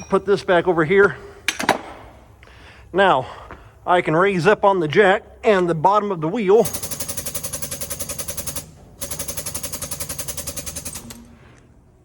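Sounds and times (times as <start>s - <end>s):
hydraulic jack pumping rattle: 6.6s - 11.6s.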